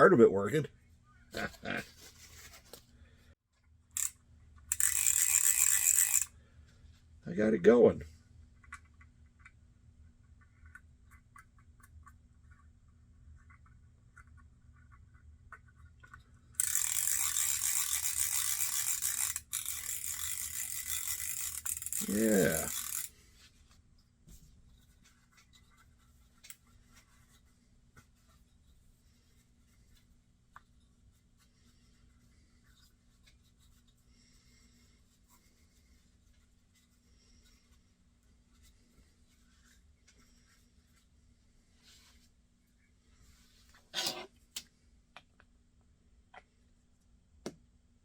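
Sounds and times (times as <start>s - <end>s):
faint rubbing or scratching: 1.4s - 3.4s, 16.8s - 44.4s
faint reel clicks: 4.0s - 6.4s, 16.0s - 23.1s
fishing reel ratcheting buzz: 4.0s - 6.4s, 16.6s - 23.1s.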